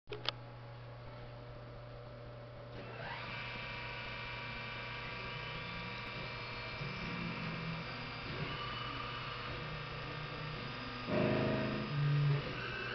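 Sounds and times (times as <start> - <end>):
low buzz: 0.1 - 12.9
mill spindle motor whine: 1.3 - 12.9
constant low hum: 4.9 - 12.9.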